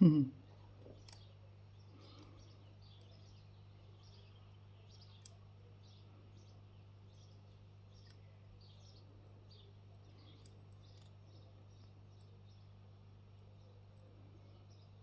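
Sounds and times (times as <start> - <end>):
steady low hum: 0.0 - 15.0
tiny clicks: 0.9 - 1.3, 8.0 - 8.2, 10.3 - 11.2.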